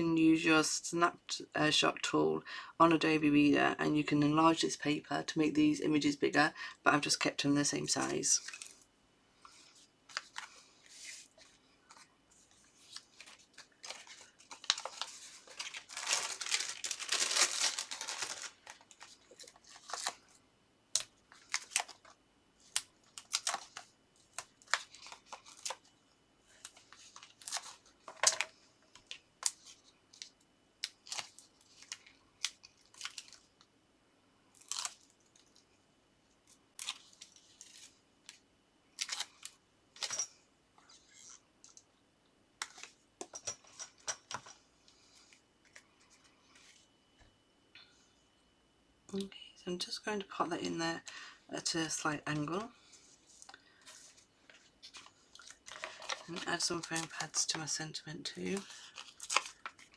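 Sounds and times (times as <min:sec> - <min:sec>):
paper rustling: 0:09.5 - 0:20.2.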